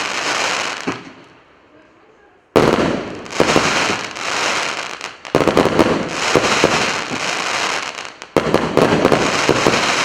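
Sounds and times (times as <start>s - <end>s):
crackling firework bursts: 0.0s - 1.4s, 2.6s - 10.0s
firework battery firing: 2.6s - 10.0s.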